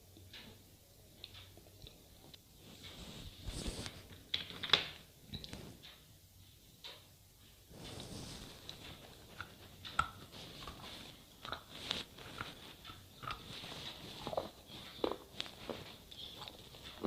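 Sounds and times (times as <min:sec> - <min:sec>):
pencil being chewed crunching: 0:08.6 - 0:17.0.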